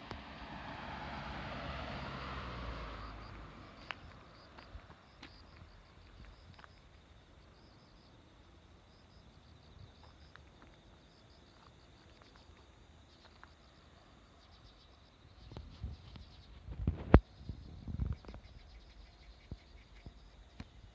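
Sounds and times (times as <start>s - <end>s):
faint insect chirping: 0.1s - 20.9s.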